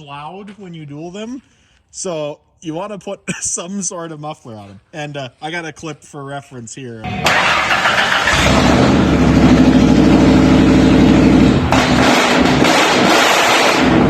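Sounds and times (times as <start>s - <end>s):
truck engine revving through exhaust: 7.1s - 14.0s.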